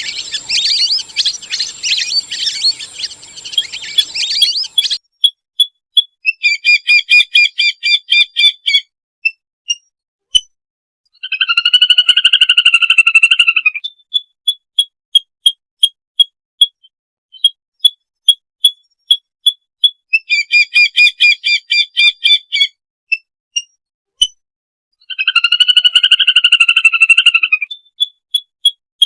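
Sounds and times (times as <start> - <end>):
whistling ducks calling: 0.0 - 5.0.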